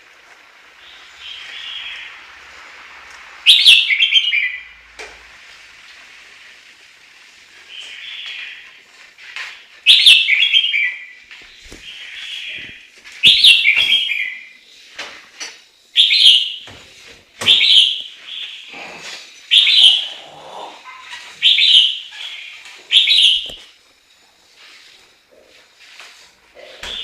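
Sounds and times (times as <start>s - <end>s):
bird singing whistled phrases: 3.4s - 4.8s, 9.9s - 11.2s, 11.8s - 14.6s, 16.0s - 16.6s, 17.4s - 18.7s, 19.5s - 20.2s, 21.4s - 23.6s.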